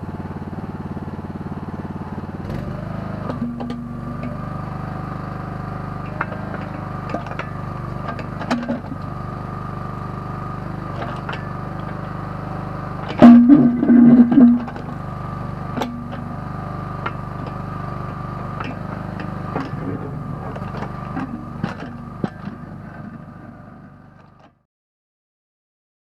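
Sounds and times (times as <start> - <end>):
backhoe engine running: 0.0 - 24.6
knocks and clanks: 3.3 - 4.4, 6.0 - 9.1, 13.0 - 15.0, 15.7 - 23.3.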